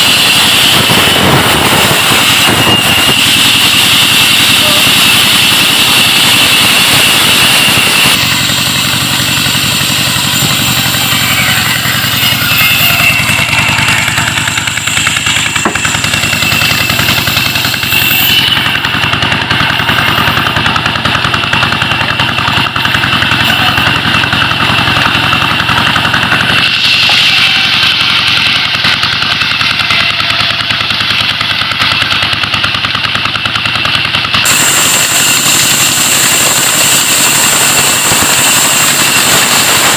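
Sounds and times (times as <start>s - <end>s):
diesel engine running: 0.0s - 39.9s
wood-cutting saw machine: 0.0s - 39.9s.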